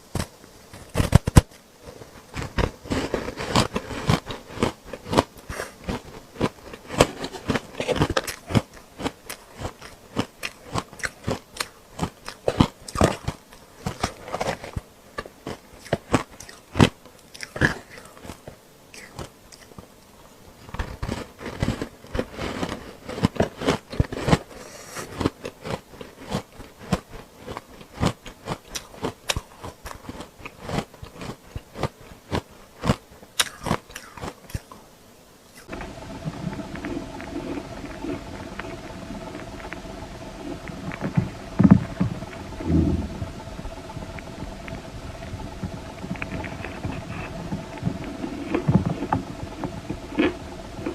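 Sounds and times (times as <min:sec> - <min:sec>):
ice crunching while chewed: 0:02.1 - 0:19.8, 0:20.6 - 0:34.8.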